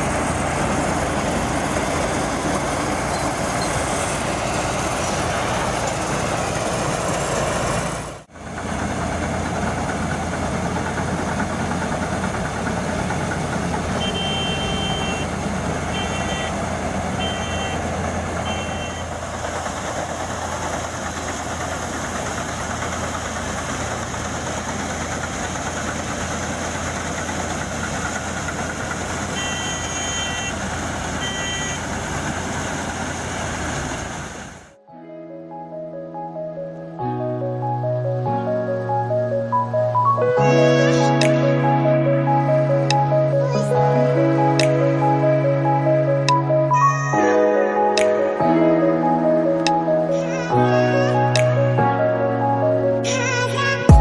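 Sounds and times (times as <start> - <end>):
combine harvester engine running: 0.0 - 34.8
electronic warning beeps: 1.9 - 4.5, 13.9 - 19.2, 29.3 - 32.0.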